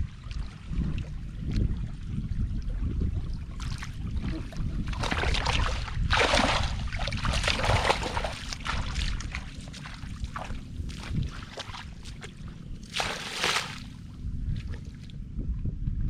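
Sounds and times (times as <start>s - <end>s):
steady low rumble: 0.0s - 16.0s
floodwater splashing: 3.5s - 15.1s.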